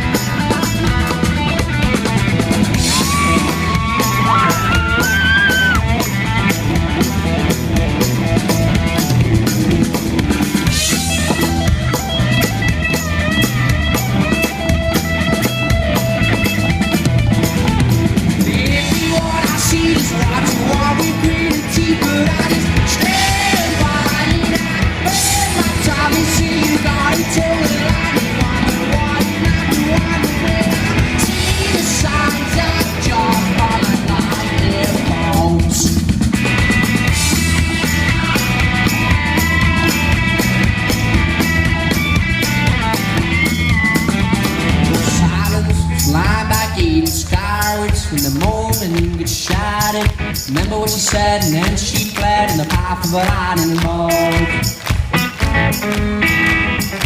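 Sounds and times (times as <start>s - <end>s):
live rock band playing: 0.0s - 57.0s
high sliding guitar notes: 54.0s - 57.0s.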